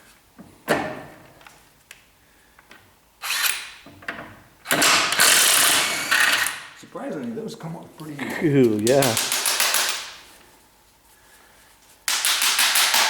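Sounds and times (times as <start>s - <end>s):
impact wrench loosening nuts: 3.2s - 3.8s, 4.7s - 6.7s.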